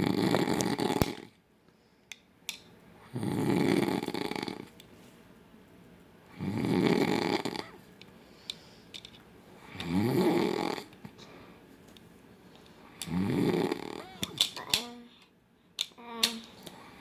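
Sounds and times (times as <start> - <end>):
man snoring loudly: 0.0 - 1.2, 3.1 - 4.7, 6.4 - 7.7, 9.8 - 10.9, 13.1 - 14.0.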